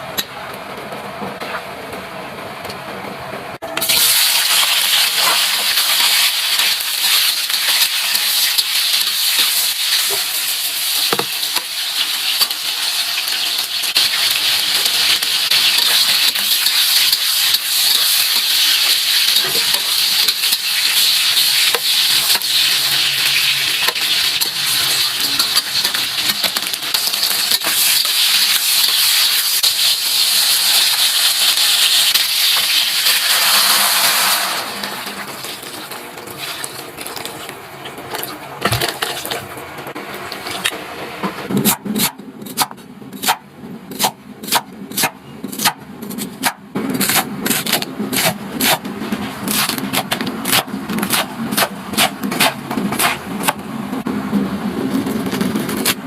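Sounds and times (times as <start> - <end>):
food sizzling in a pan: 3.9 - 36.6.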